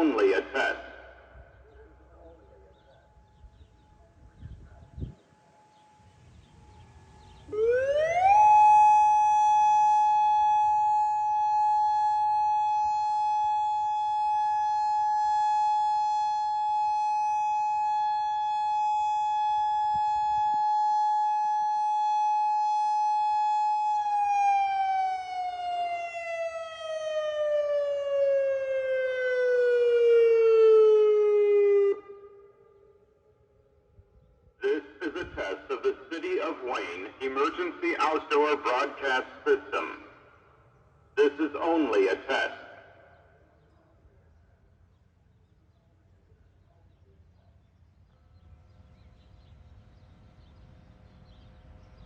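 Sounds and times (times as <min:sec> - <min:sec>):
warning siren steady tone: 0:00.0 - 0:40.2.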